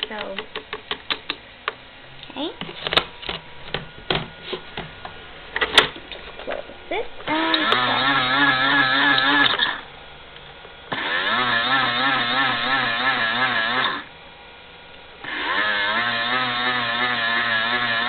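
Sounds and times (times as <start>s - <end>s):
toy electric motor whirring: 7.3s - 9.9s, 10.9s - 14.1s, 15.2s - 18.0s.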